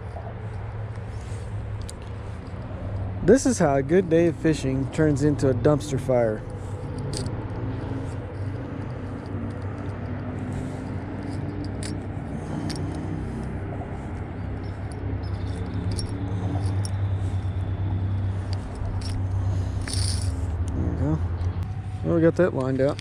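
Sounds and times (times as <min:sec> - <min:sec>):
low engine hum: 0:00.0 - 0:23.0.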